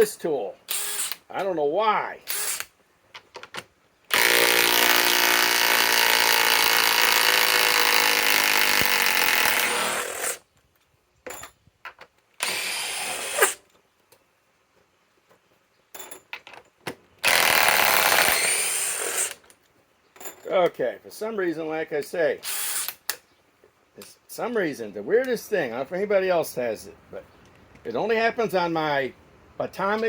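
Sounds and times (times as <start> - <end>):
impact wrench running: 0.7 - 1.2, 2.3 - 2.7, 4.1 - 10.4, 17.2 - 19.4.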